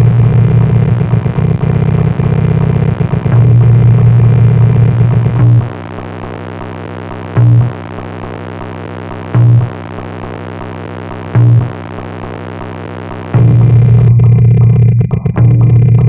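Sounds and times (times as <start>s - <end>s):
loud low pulse: 0.0s - 5.7s, 13.4s - 16.0s
synthesizer drone: 0.0s - 6.2s, 13.4s - 16.0s.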